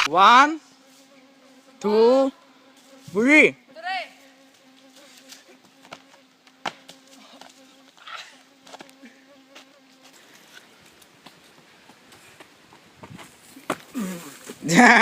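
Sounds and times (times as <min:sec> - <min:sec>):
insect buzzing: 0:00.0 - 0:15.0.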